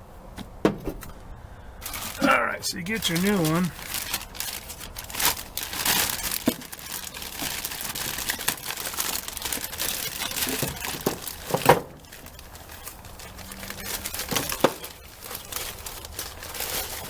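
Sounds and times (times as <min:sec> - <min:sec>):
packaging crinkling and rustling: 0:00.8 - 0:17.0.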